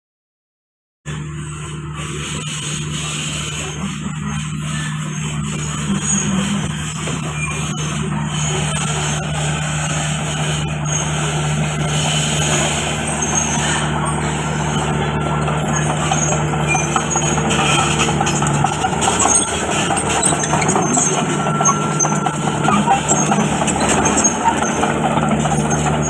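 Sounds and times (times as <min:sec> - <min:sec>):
bulldozer diesel engine drone: 0:01.1 - 0:26.0.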